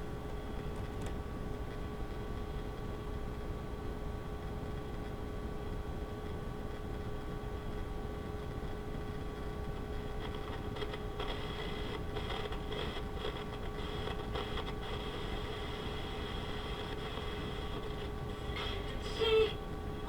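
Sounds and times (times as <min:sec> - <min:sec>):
faint crackles: 0:09.7 - 0:19.2
radio static hiss: 0:10.2 - 0:20.0.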